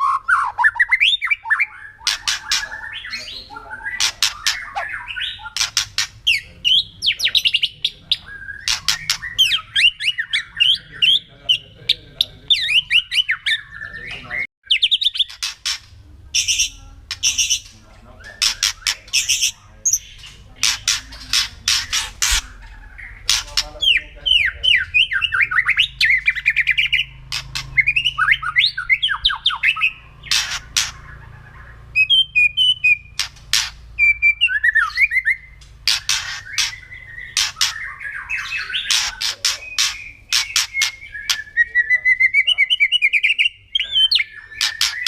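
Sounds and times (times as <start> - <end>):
bird calling with rattling clicks: 33.1 - 33.8, 35.6 - 37.8, 38.9 - 41.5, 44.6 - 45.0.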